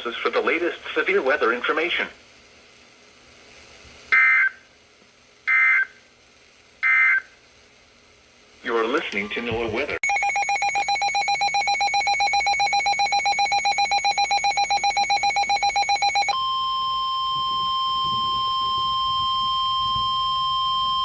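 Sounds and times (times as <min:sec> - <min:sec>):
weather radio alert tone pulsing: 0:09.2 - 0:21.0
steady warning alarm tone: 0:10.0 - 0:21.0.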